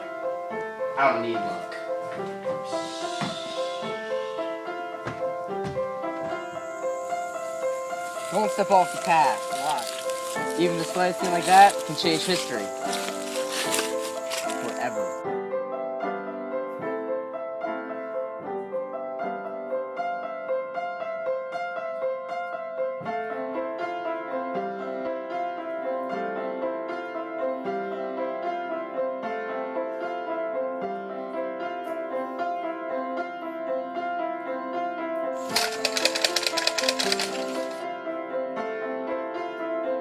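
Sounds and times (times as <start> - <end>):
piano playing quick notes: 1.0 - 15.2.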